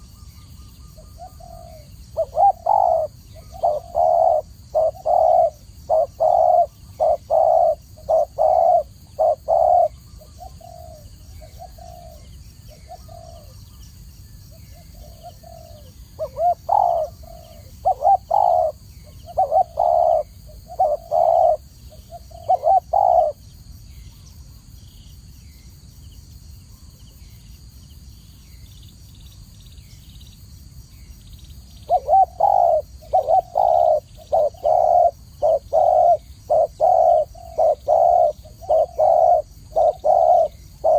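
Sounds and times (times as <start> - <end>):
dove cooing: 0.0 - 13.7, 14.5 - 23.4, 31.8 - 40.9.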